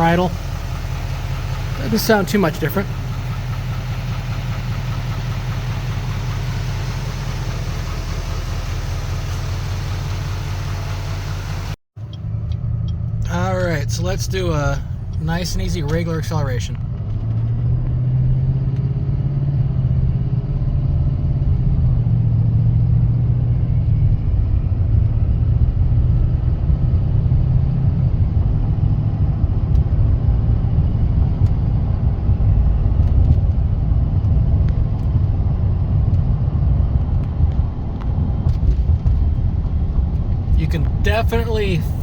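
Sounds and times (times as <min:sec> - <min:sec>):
turbo and intake whoosh: 0:00.0 - 0:11.8
diesel truck engine accelerating: 0:00.0 - 0:42.0.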